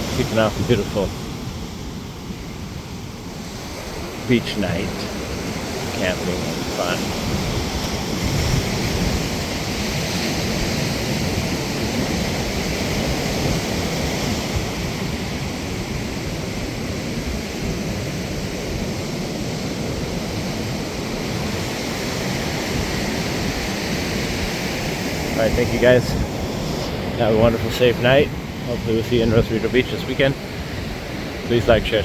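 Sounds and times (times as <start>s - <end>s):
ocean surf on a beach: 0.0s - 32.0s
wind on the microphone: 0.0s - 32.0s.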